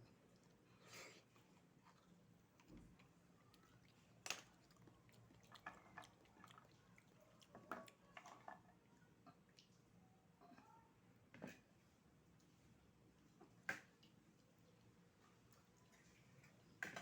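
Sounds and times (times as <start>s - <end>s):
wet eating sounds: 0.2s - 9.8s.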